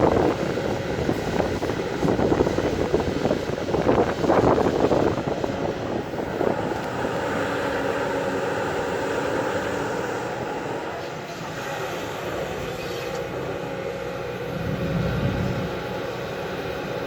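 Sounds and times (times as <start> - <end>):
diesel engine droning: 0.0 - 17.0.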